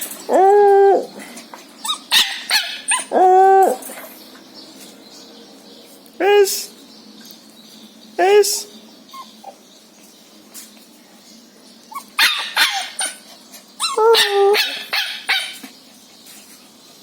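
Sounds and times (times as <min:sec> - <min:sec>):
puppy barking and yipping: 0:01.8 - 0:03.9, 0:11.9 - 0:15.7.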